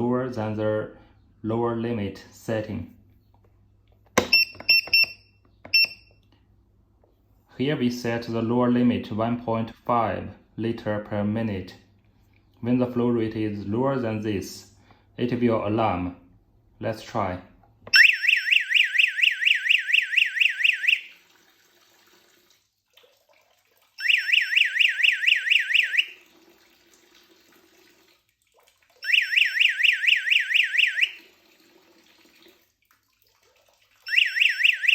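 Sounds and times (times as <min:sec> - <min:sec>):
electronic warbling alarm beep: 0:17.9 - 0:21.1, 0:24.0 - 0:26.2, 0:29.0 - 0:31.2, 0:34.1 - 0:34.9.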